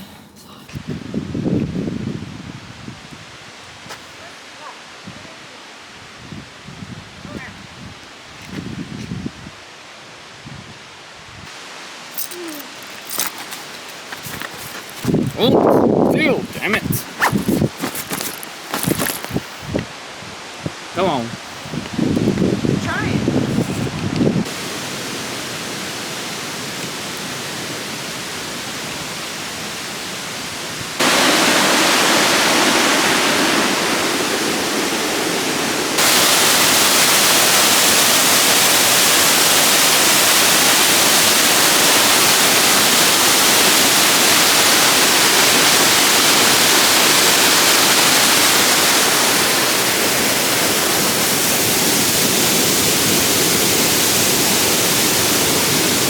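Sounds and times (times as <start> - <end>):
waterfall rushing: 11.5 - 19.2, 24.4 - 56.0.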